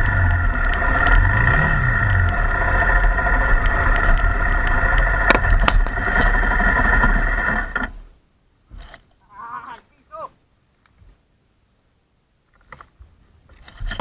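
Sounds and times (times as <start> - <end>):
motorcycle engine running: 0.0 - 7.1.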